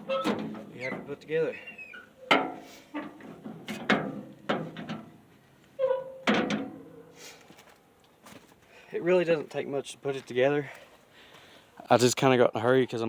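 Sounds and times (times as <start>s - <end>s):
short squeak: 0.0s - 2.3s, 5.8s - 6.3s
metal wheelbarrow thunks: 0.0s - 8.5s.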